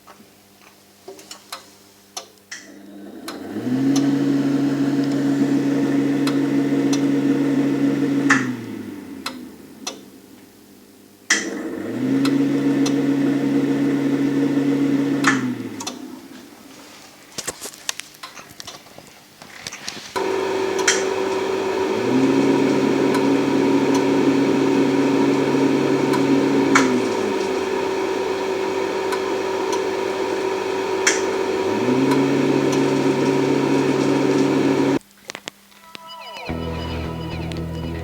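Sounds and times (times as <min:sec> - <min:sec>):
deeper hum: 0:20.2 - 0:35.0
laser system humming: 0:20.2 - 0:35.0.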